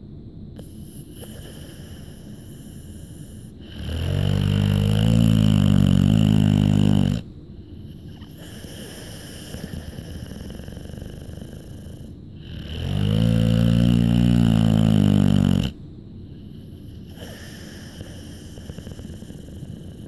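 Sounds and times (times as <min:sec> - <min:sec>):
dog snoring: 0:00.5 - 0:20.0
dog rough breathing: 0:00.6 - 0:20.0.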